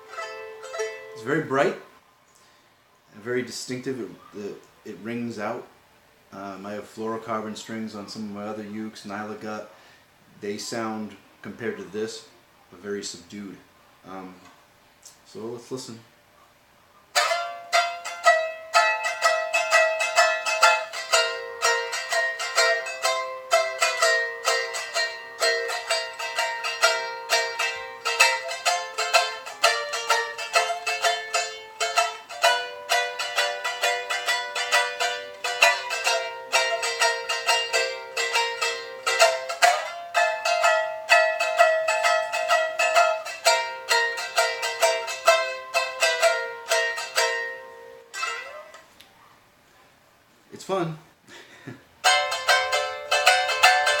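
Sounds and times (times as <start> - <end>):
ukulele strummed: 0.0 - 1.9, 17.1 - 48.8, 52.0 - 54.0.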